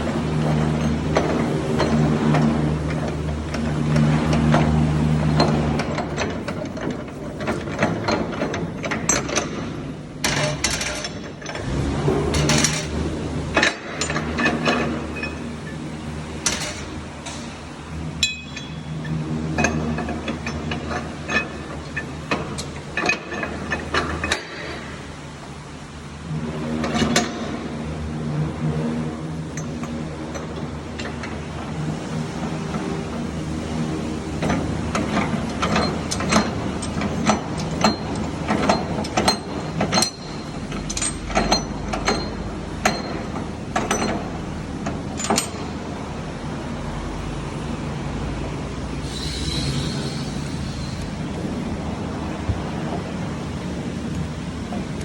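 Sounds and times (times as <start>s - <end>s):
metal knocks and clinks: 18.2s - 19.0s
low hum: 49.0s - 53.0s.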